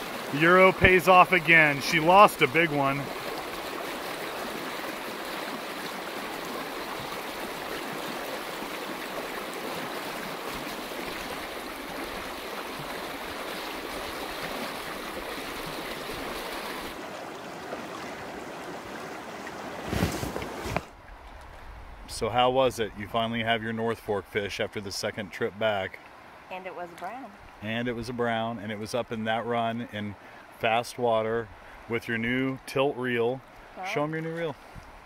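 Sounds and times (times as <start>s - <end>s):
river water rushing: 0.0s - 21.3s.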